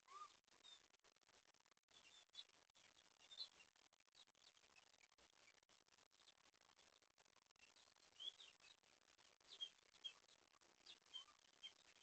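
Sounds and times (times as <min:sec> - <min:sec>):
faint outdoor hiss: 0:00.0 - 0:12.0
distant bird chirps: 0:09.5 - 0:12.0.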